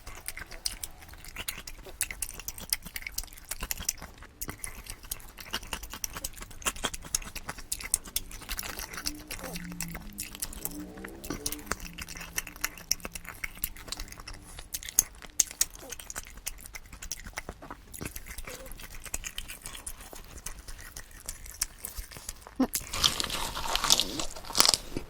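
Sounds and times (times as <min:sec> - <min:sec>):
person chewing wetly: 0:00.0 - 0:25.0
low humming voice: 0:08.2 - 0:12.9.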